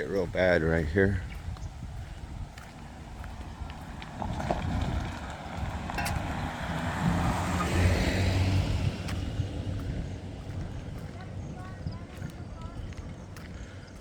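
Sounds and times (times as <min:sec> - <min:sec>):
vehicle driving past: 0:02.9 - 0:11.4.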